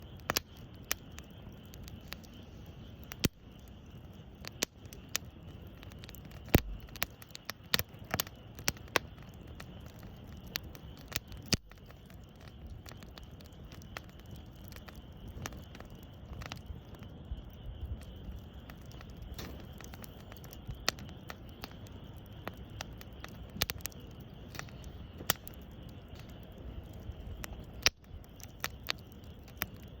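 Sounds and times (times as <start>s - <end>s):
campfire crackling: 0.0s - 30.0s
fire popping: 0.0s - 30.0s
low rumble of burning fire: 0.0s - 30.0s.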